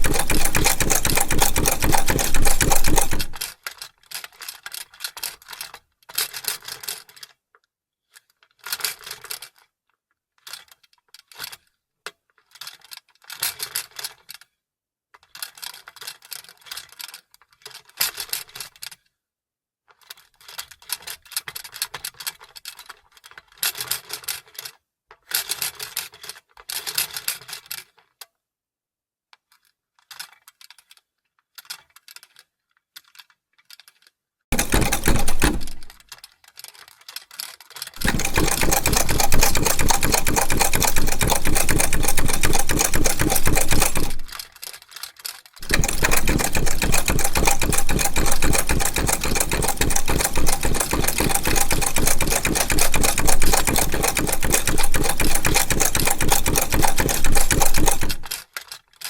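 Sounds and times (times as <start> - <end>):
sewing machine stitching fast: 0.0 - 3.5, 34.5 - 36.0, 38.0 - 44.5, 45.6 - 58.5
sewing machine clicking and rattling: 0.0 - 3.6, 33.0 - 59.0.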